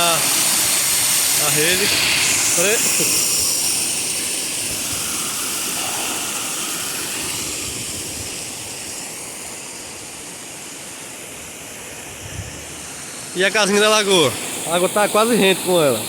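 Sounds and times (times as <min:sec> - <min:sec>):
floodwater rushing: 0:00.0 - 0:16.0.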